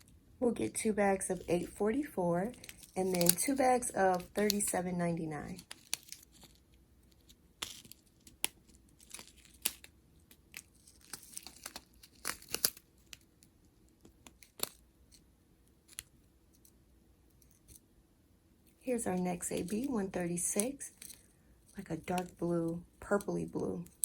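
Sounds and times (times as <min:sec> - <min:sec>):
plastic bags crinkling: 0:02.5 - 0:04.8, 0:10.5 - 0:13.2.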